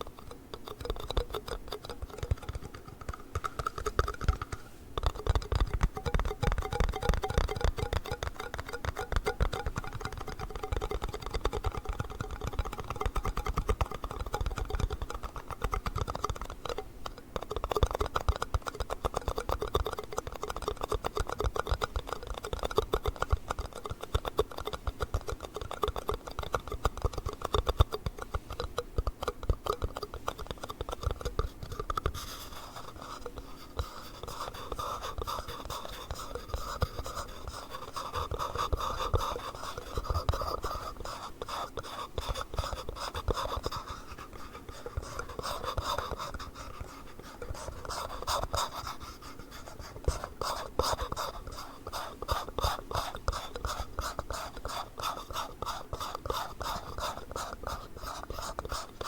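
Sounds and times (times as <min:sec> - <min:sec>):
fingernails tapping on plastic: 0:00.8 - 0:16.8.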